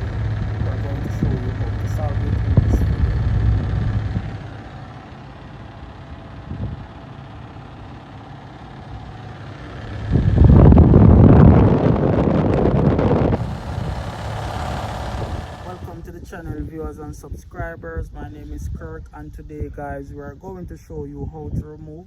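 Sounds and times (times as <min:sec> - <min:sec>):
car engine running: 0:00.0 - 0:16.6
rough air conditioning compressor: 0:00.0 - 0:16.7.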